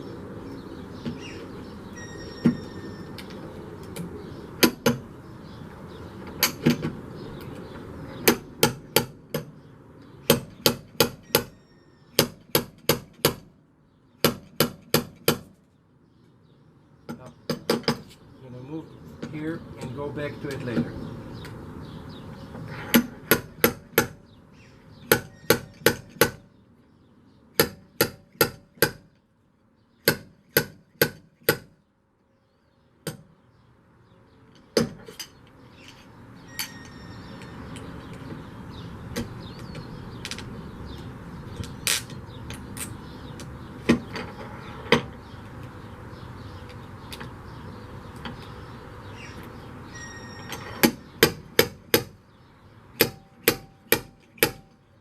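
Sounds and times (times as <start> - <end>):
steady background noise: 0.0 - 55.0
hammer striking metal: 10.3 - 11.6, 25.1 - 26.4, 53.0 - 54.8.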